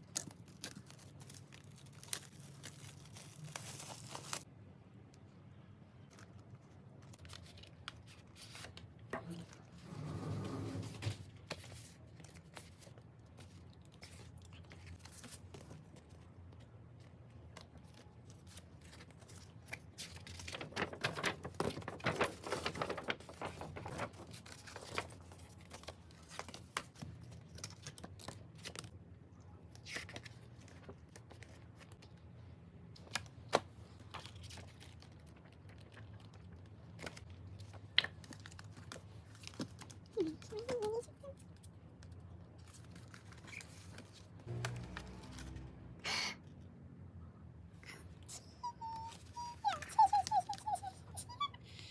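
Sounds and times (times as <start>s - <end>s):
plastic wrap crinkling and tearing: 0.0s - 4.5s, 17.5s - 28.9s, 34.1s - 41.7s.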